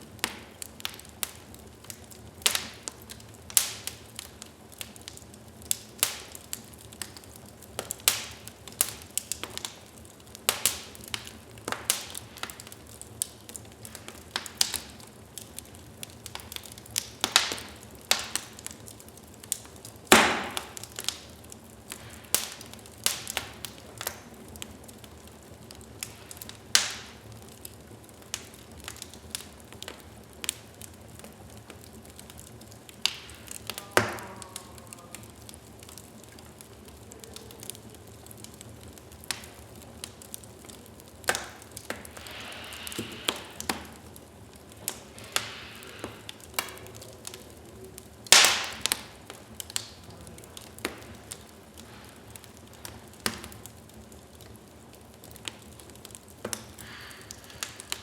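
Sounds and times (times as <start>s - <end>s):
wood fire crackling: 0.0s - 58.0s.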